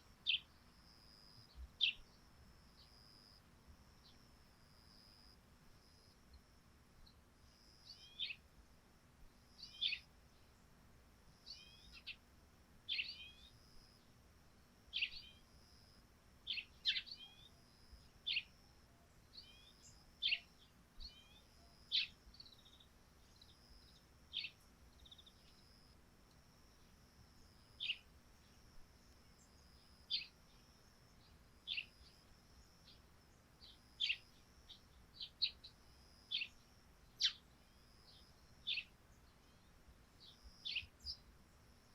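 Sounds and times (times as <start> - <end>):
sparrows chirping: 0.2 - 0.6, 1.2 - 3.4, 7.0 - 8.4, 9.6 - 10.6, 11.4 - 12.2, 12.9 - 13.6, 14.9 - 15.6, 16.4 - 26.0, 26.8 - 41.9.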